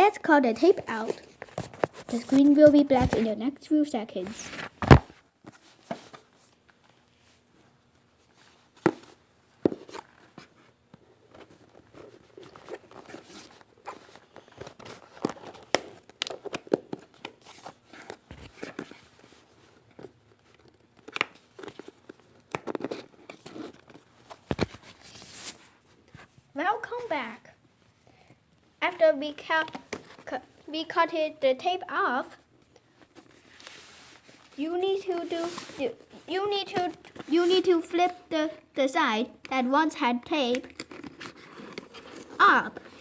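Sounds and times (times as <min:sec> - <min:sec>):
packaging rustling: 0:11.2 - 0:25.8.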